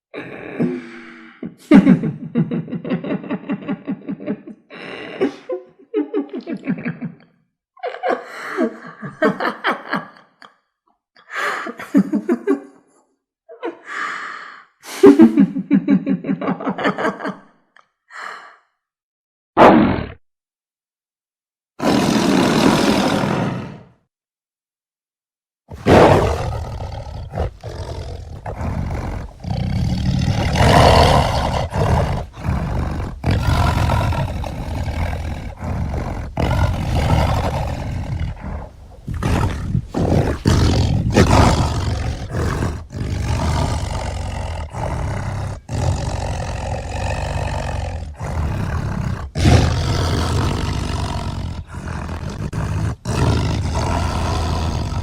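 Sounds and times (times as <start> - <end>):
rough roaring animal cries: 25.8 - 38.5.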